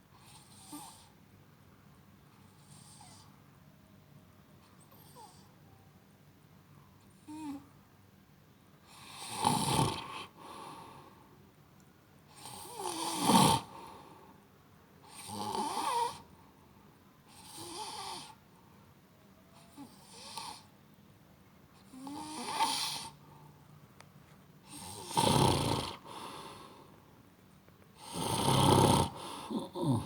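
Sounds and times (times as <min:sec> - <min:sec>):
person snoring: 0:09.0 - 0:10.4, 0:12.4 - 0:13.9, 0:21.9 - 0:23.2, 0:24.7 - 0:26.9, 0:28.0 - 0:30.0.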